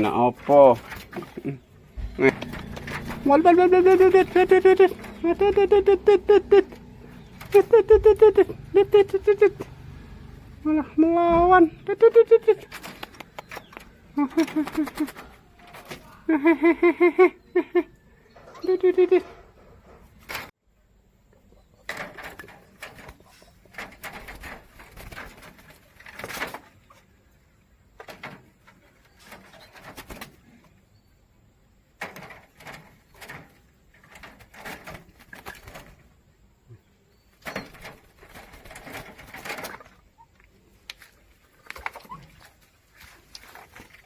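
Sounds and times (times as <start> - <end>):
agitated bird calls: 11.5 - 17.9.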